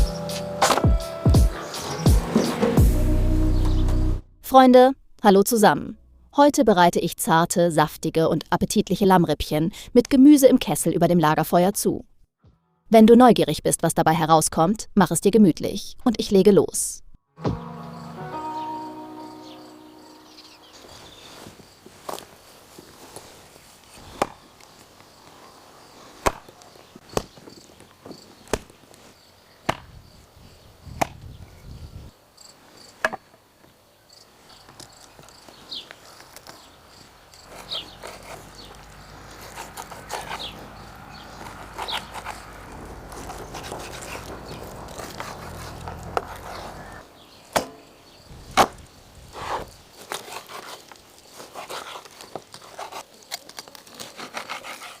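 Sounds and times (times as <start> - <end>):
rustling: 20.6 - 29.3, 34.4 - 47.0.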